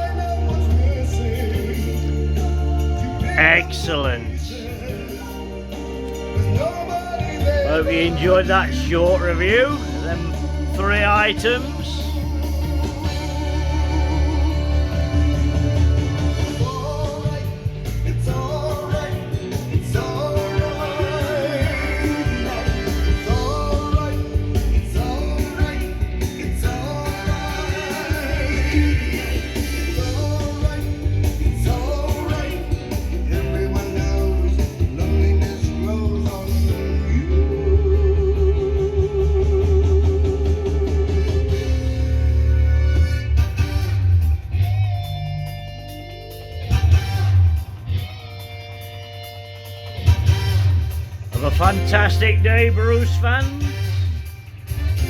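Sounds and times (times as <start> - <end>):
bass guitar: 0.0 - 55.0
person singing: 3.2 - 4.7, 7.6 - 12.2
electric guitar: 9.2 - 51.9.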